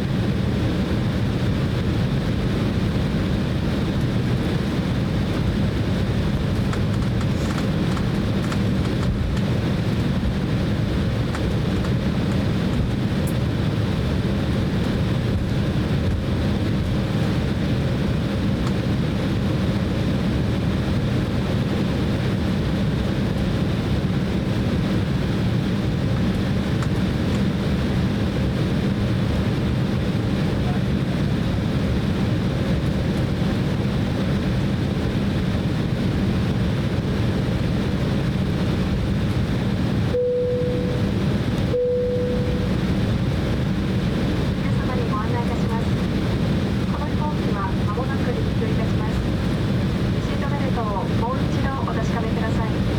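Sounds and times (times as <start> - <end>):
airliner cabin hum: 0.0 - 52.9.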